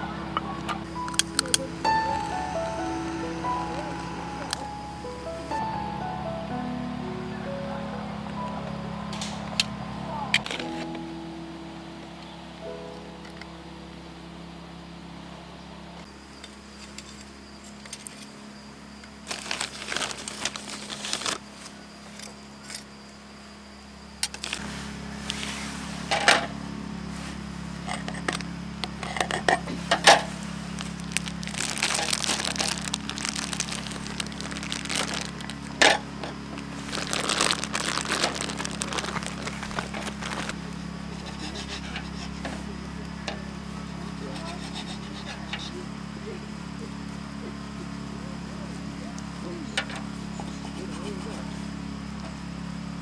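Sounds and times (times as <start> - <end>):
steady low hum: 0.0 - 22.3, 23.2 - 53.0
crinkling and rustling: 19.2 - 22.3, 24.3 - 26.5, 27.2 - 42.7.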